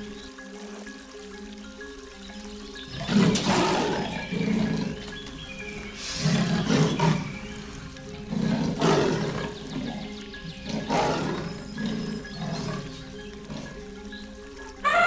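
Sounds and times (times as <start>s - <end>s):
background music: 0.0s - 15.0s
big cat roaring: 2.9s - 5.0s, 8.3s - 10.0s, 10.6s - 12.9s.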